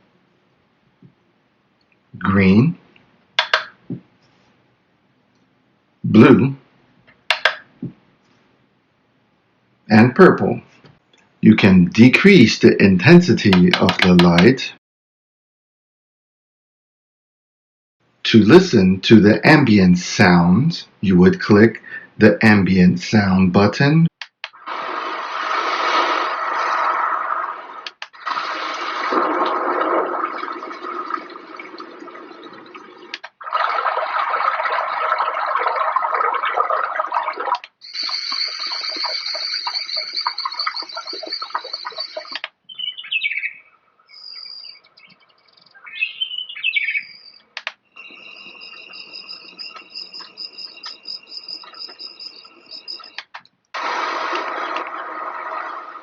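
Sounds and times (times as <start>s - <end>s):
steady high chirring: 37.8s - 42.5s, 47.0s - 53.3s
bird chirps: 37.8s - 53.2s.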